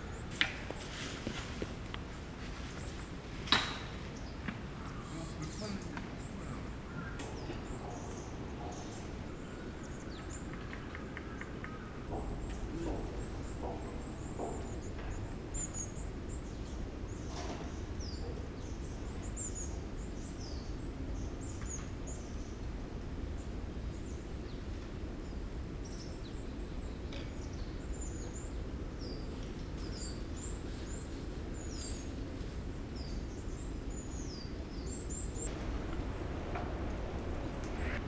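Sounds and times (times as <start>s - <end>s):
small birds chirping: 4.0s - 22.5s, 33.0s - 38.0s
low background rumble: 35.4s - 38.0s.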